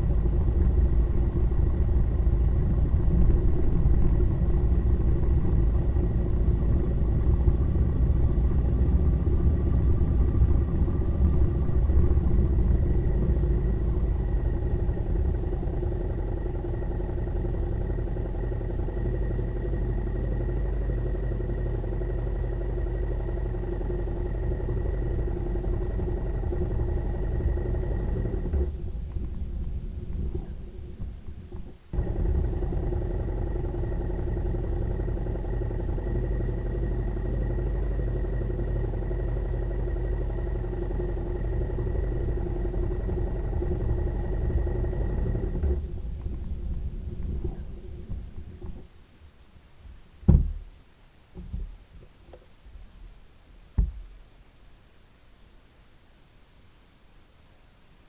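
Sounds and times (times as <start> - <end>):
vehicle engine running: 0.0 - 49.4
heavy low rumble: 0.0 - 54.5.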